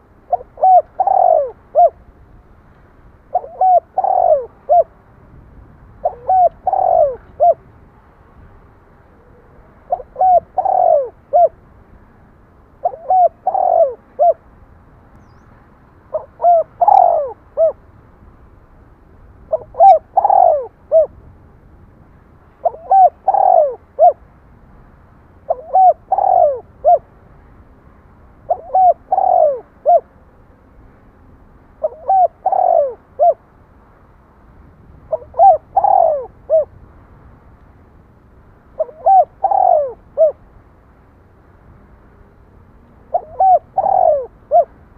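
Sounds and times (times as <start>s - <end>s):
dove cooing: 0.0s - 2.1s, 3.3s - 5.0s, 6.0s - 7.7s, 9.2s - 11.6s, 12.8s - 14.4s, 16.1s - 17.8s, 19.5s - 21.1s, 22.6s - 24.2s, 25.5s - 27.1s, 28.5s - 30.1s, 31.8s - 33.4s, 35.1s - 36.7s, 38.8s - 40.4s, 43.0s - 44.8s.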